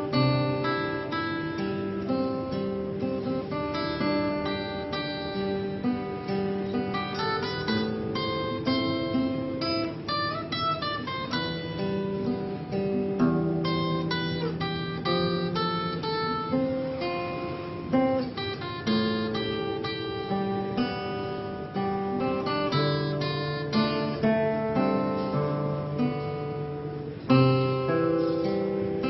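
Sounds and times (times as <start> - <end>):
acoustic guitar melody: 0.0 - 29.0.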